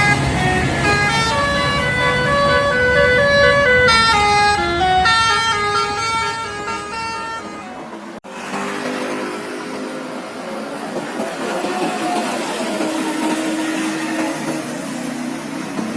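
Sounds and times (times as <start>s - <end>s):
multi-tone bus horn tune: 0.0s - 8.2s
bus engine running: 0.0s - 15.9s.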